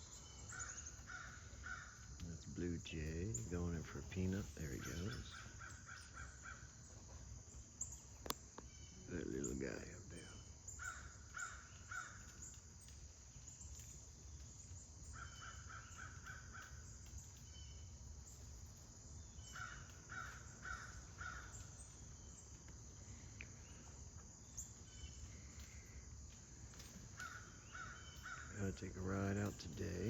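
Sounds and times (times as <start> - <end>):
crows cawing: 0.2 - 2.2, 4.6 - 6.8, 10.8 - 12.5, 15.1 - 16.9, 19.4 - 21.8, 27.0 - 28.6.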